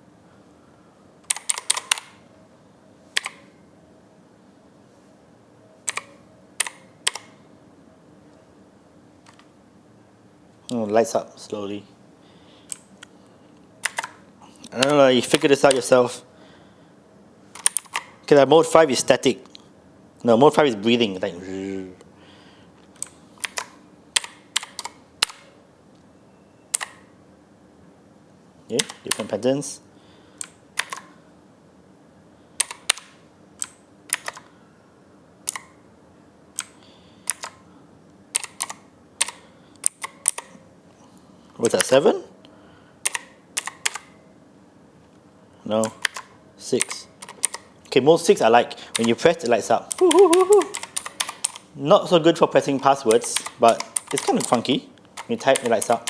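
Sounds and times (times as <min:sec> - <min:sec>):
mechanical keyboard key clicks: 0:01.3 - 0:02.2, 0:05.9 - 0:07.3, 0:13.8 - 0:14.2, 0:17.6 - 0:18.1, 0:23.0 - 0:25.4, 0:26.7 - 0:27.0, 0:28.8 - 0:29.3, 0:30.4 - 0:31.1, 0:32.6 - 0:34.5, 0:35.5 - 0:35.7, 0:36.6 - 0:37.6, 0:38.3 - 0:40.6, 0:43.1 - 0:44.1, 0:45.8 - 0:47.7, 0:48.9 - 0:49.2, 0:49.9 - 0:51.7, 0:53.1 - 0:54.6, 0:55.2 - 0:56.0.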